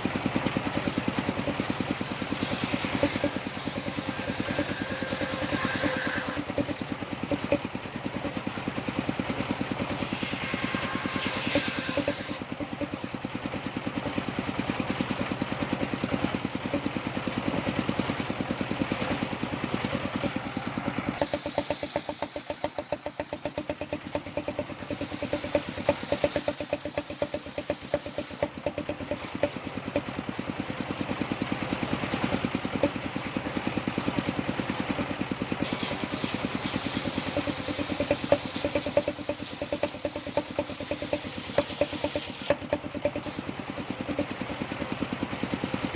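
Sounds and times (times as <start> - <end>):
engine idling with chugging pulse: 0.0 - 45.9.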